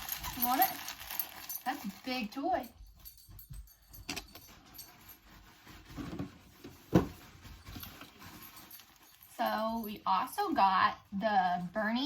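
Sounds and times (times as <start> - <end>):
soft rustling: 0.0 - 10.8
handling knocks: 6.0 - 8.5.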